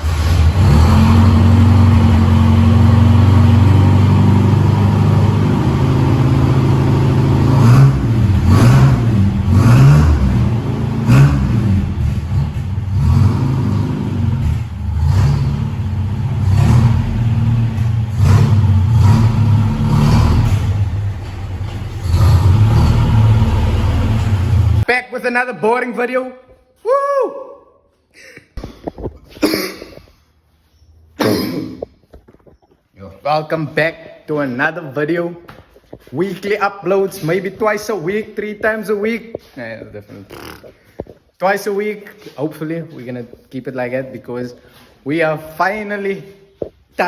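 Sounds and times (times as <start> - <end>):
car engine revving: 0.0 - 24.9.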